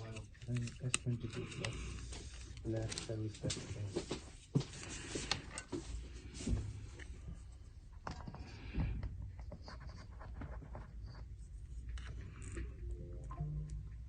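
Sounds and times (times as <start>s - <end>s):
low steady hum: 11.1s - 14.0s.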